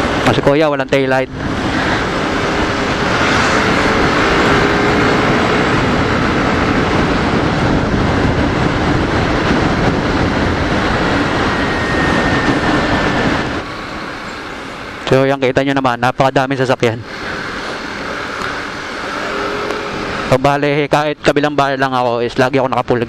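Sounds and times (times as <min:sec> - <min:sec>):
faint motorcycle engine drone: 0:00.0 - 0:23.0
road noise: 0:00.0 - 0:23.0
wind rushing: 0:00.9 - 0:16.0.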